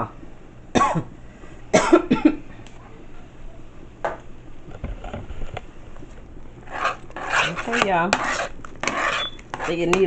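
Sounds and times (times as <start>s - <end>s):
person coughing: 0.8s - 1.1s, 1.7s - 2.4s.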